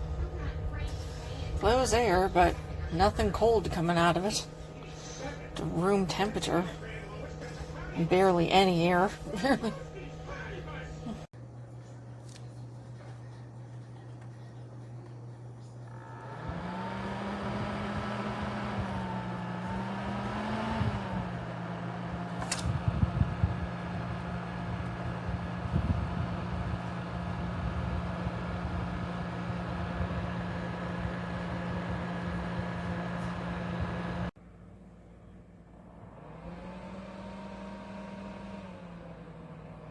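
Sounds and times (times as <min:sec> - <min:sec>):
fan motor whirring hum: 0:00.0 - 0:39.9
sharp click: 0:22.4 - 0:22.8.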